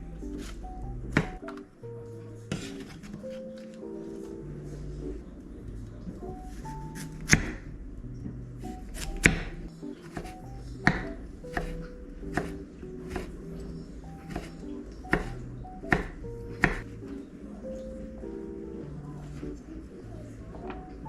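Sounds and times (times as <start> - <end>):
background music: 0.0 - 21.0
knife chopping on cutting board: 0.4 - 1.6, 2.5 - 3.7, 6.6 - 7.6, 9.0 - 13.5, 14.2 - 16.9.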